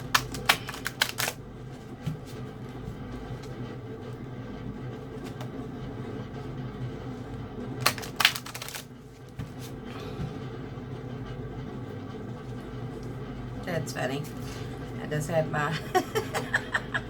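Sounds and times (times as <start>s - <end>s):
cards riffling: 0.0s - 1.4s, 7.8s - 9.5s
low steady hum: 0.0s - 17.0s.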